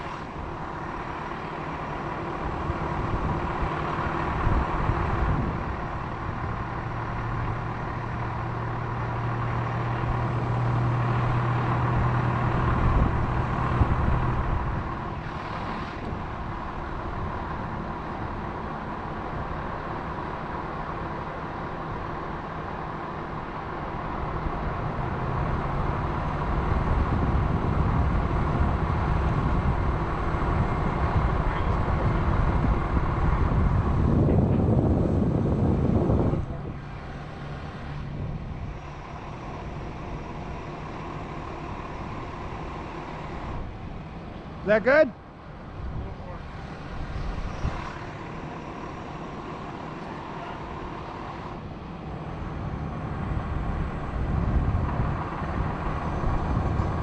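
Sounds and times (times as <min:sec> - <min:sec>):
truck engine running: 0:00.0 - 0:57.0.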